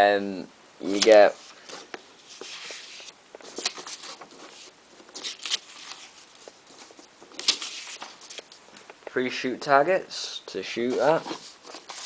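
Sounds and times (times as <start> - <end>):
paper and packaging rustling: 0.9 - 8.6, 10.8 - 12.0.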